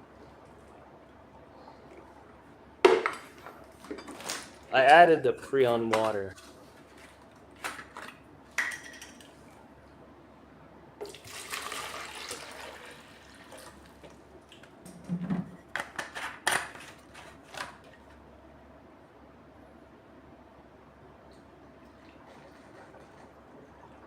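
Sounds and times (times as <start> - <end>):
water pouring and splashing: 11.0 - 14.1.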